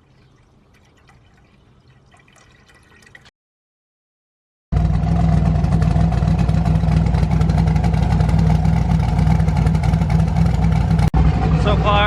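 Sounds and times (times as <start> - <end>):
car engine idling loudly: 4.8 - 12.0.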